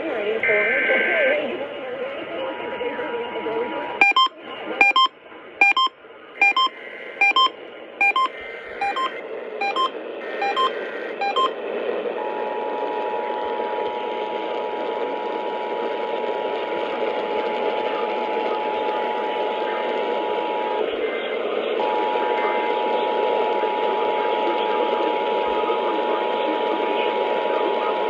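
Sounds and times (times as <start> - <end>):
faint data tones: 4.0 - 11.5
short electronic chord beeps: 4.0 - 11.5
two-tone alert signal: 4.0 - 11.5.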